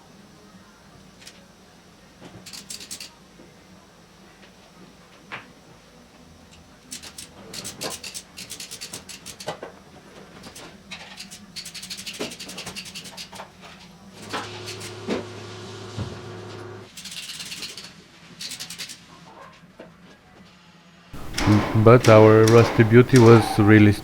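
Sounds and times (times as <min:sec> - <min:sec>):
metallic clicks and rattles: 0:21.2 - 0:23.5
motor hum: 0:21.2 - 0:24.0.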